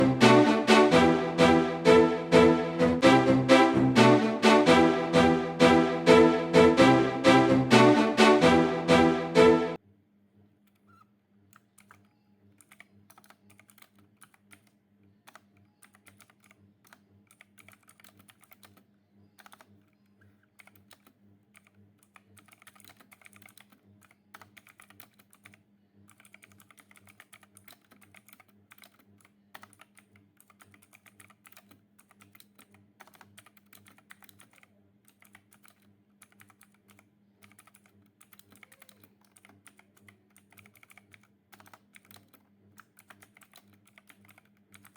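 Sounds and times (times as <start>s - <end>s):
mechanical keyboard typing: 12.6s - 14.7s, 15.3s - 18.8s, 19.4s - 19.7s, 20.6s - 44.9s.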